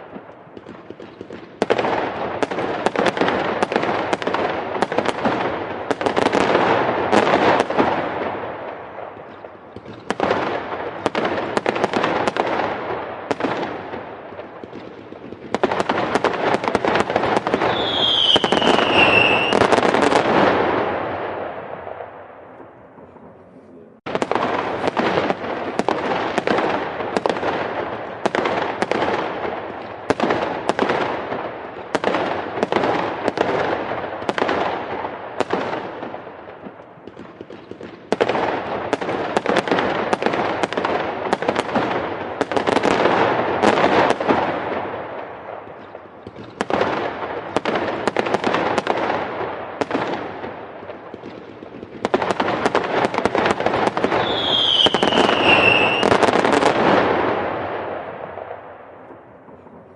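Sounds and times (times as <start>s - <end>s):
fireworks bangs and crackling: 0.0s - 59.9s
firework whistle falling in pitch: 17.6s - 19.7s, 54.2s - 56.1s.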